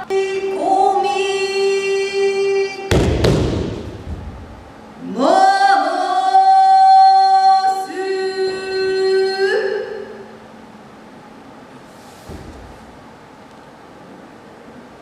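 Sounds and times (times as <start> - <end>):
heavy drum strikes: 2.9 - 4.8.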